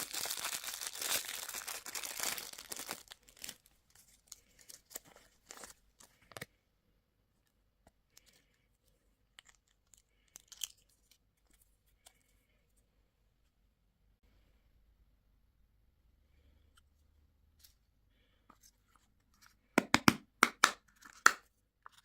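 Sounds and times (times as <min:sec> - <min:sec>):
candy wrapper tearing and crinkling: 0:00.0 - 0:06.3, 0:09.4 - 0:11.1.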